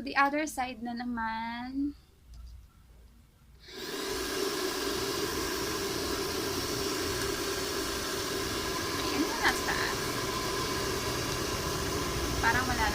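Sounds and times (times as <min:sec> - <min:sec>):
hair dryer running: 0:03.6 - 0:12.9.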